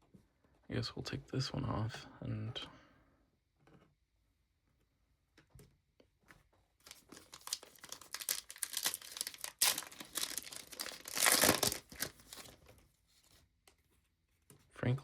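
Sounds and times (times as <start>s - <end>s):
foil wrapper crinkling and tearing: 6.8s - 12.7s.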